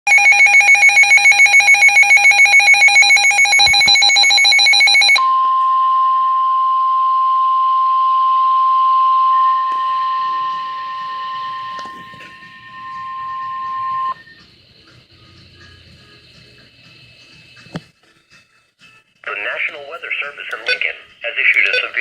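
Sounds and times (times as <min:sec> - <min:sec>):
electronic alarm trilling: 0:00.1 - 0:14.4
steady warning alarm tone: 0:00.1 - 0:14.4
faint radio hiss: 0:18.8 - 0:22.0.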